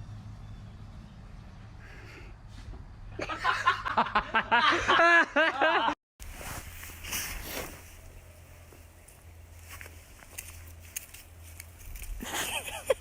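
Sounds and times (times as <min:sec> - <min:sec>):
person laughing: 0:03.2 - 0:06.0, 0:12.2 - 0:13.0.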